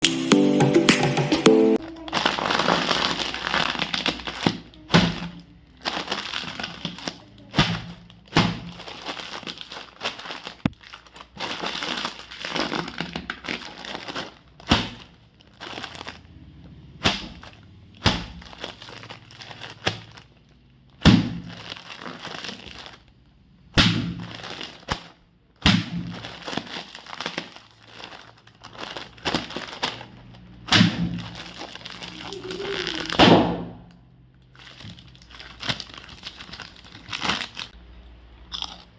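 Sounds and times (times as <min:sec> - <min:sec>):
potato chip crunching: 0:01.8 - 0:07.4, 0:08.1 - 0:20.8, 0:26.1 - 0:33.2, 0:34.4 - 0:37.8, 0:38.5 - 0:38.9
crinkly crackling rustle: 0:01.8 - 0:23.4, 0:24.1 - 0:25.2, 0:26.0 - 0:33.2, 0:34.3 - 0:37.8.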